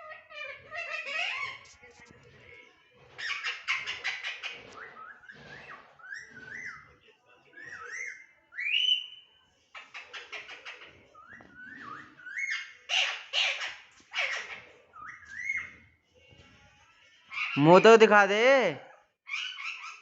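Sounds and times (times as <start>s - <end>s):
parrot squawking: 0.0s - 1.8s, 3.2s - 6.9s, 7.6s - 15.8s, 17.3s - 18.2s, 19.2s - 20.0s
parrot whistling: 7.6s - 9.3s.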